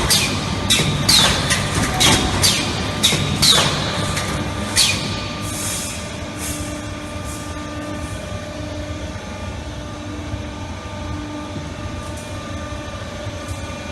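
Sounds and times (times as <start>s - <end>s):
welding machine humming: 0.0s - 9.0s.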